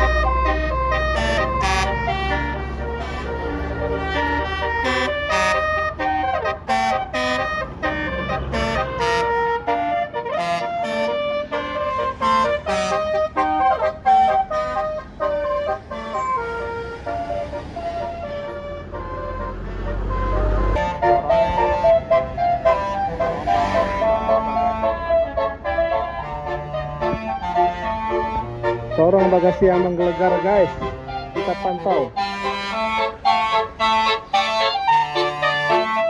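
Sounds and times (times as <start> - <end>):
low bus engine rumble: 0.0 - 36.0
multi-tone bus air horn melody: 0.0 - 36.0.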